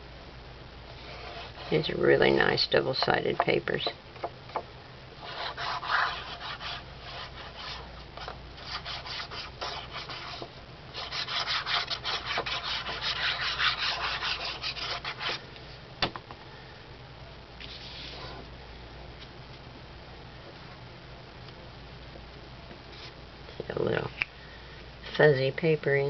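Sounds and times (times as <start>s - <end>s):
paper being rubbed: 5.2s - 15.4s.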